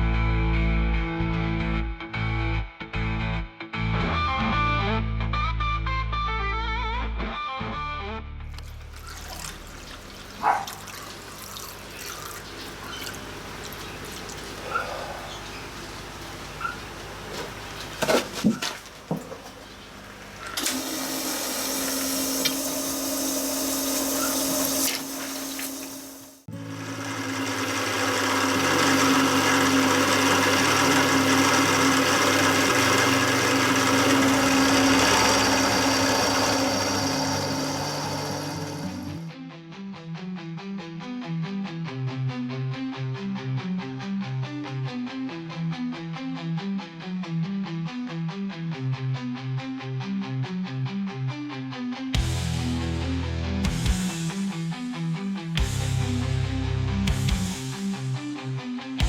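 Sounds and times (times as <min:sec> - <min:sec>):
milling machine cutting steel: 0:20.4 - 0:39.3
background music with low notes: 0:39.2 - 0:59.0.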